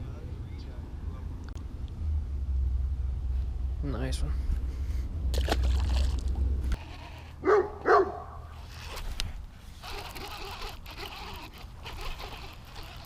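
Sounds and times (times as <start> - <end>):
dog barking: 7.4 - 8.4.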